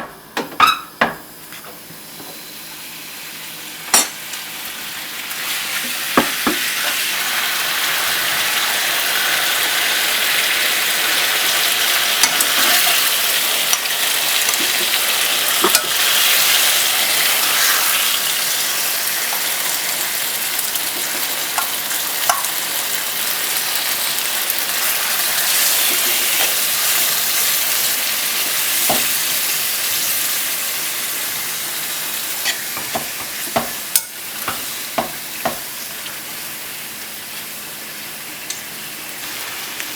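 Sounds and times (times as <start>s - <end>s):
food sizzling in a hot pan: 2.0s - 39.9s
utensil knocking against pan: 32.8s - 33.8s.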